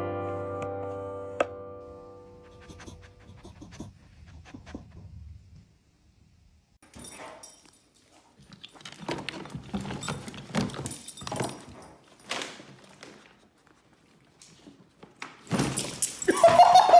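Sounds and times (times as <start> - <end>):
dog clicking and scuffling: 6.8 - 16.6.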